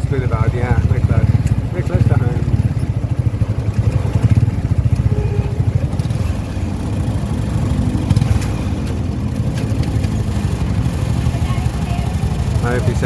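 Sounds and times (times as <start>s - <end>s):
motorcycle engine rumbling: 0.0s - 13.0s.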